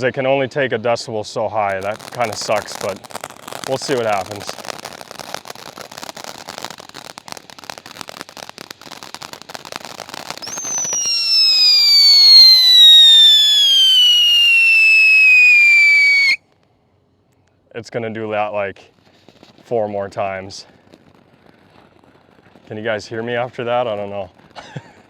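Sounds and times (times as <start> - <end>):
firework fountain crackling fizz: 1.1 - 16.6, 18.8 - 25.0
firework whistle sliding down: 1.7 - 16.4.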